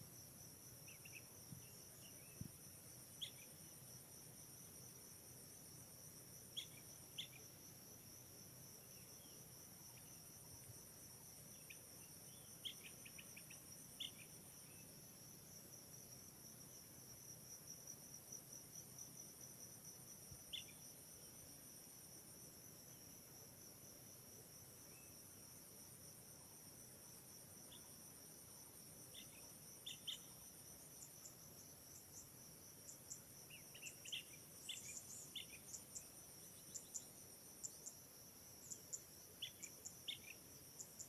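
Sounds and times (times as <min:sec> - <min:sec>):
crickets trilling: 0:00.0 - 0:41.0
short sharp insect chirps: 0:00.8 - 0:03.7, 0:06.4 - 0:07.6, 0:11.5 - 0:15.1, 0:20.4 - 0:20.9, 0:29.1 - 0:32.3, 0:32.9 - 0:41.0.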